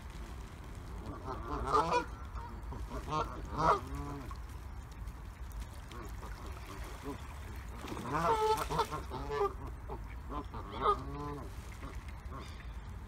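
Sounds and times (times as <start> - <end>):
geese honking: 1.0 - 4.3, 6.0 - 12.6.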